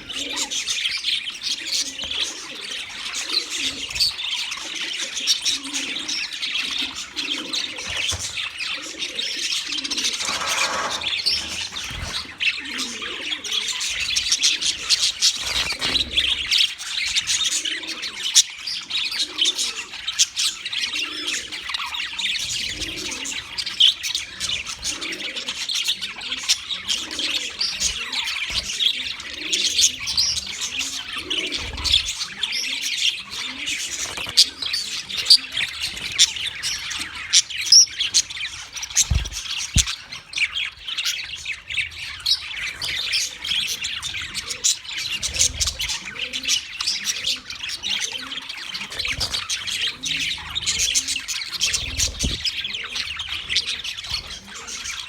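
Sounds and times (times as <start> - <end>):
budgerigars chattering and chirping: 0.0 - 55.0.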